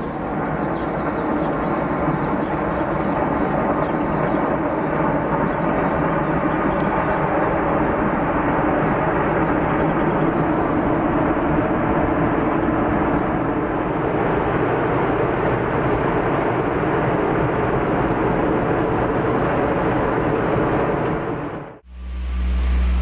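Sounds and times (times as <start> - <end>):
steady rushing rumble: 21.0 - 23.0.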